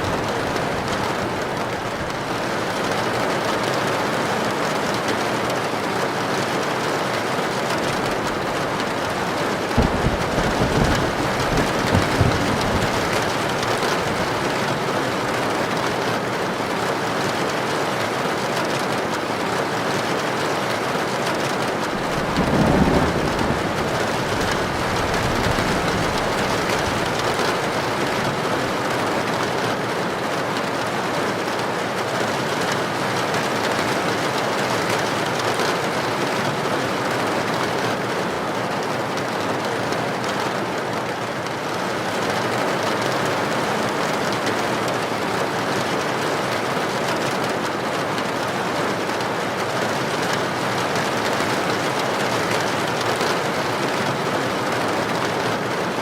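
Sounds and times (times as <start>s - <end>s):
heavy rain on a tin roof: 0.0s - 56.0s.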